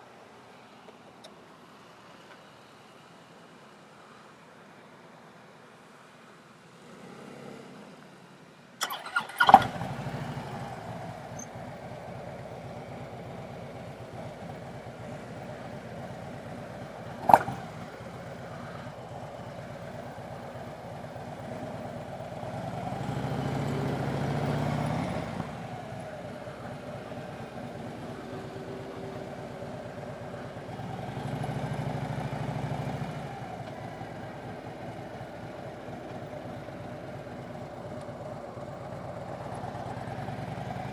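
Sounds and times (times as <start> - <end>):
motorcycle engine running: 8.8 - 40.9.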